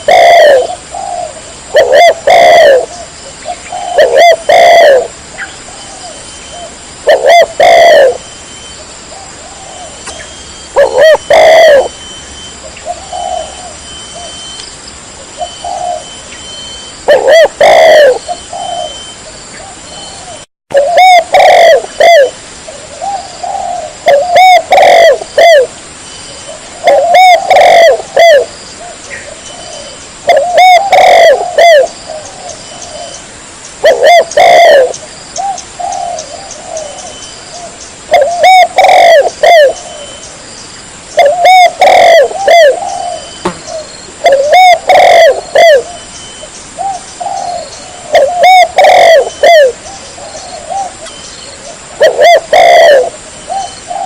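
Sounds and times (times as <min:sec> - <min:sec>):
dove cooing: 0:00.0 - 0:08.3, 0:09.0 - 0:12.0, 0:12.6 - 0:14.5, 0:15.2 - 0:16.3, 0:17.0 - 0:25.8, 0:26.4 - 0:33.2, 0:33.8 - 0:40.2, 0:41.2 - 0:54.0.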